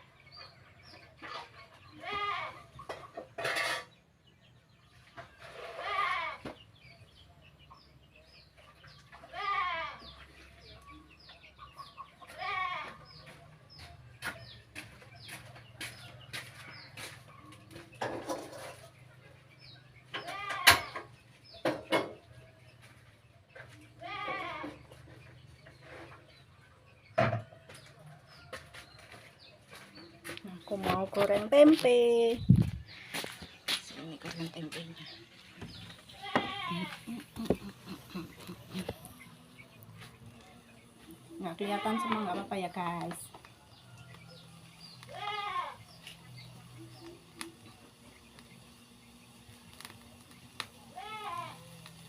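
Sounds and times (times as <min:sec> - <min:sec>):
goats bleating: 0:02.0 - 0:02.7, 0:05.6 - 0:06.4, 0:09.2 - 0:10.2, 0:12.3 - 0:13.1, 0:24.0 - 0:24.8, 0:35.7 - 0:39.4, 0:41.0 - 0:42.5, 0:44.8 - 0:46.0, 0:50.6 - 0:51.9.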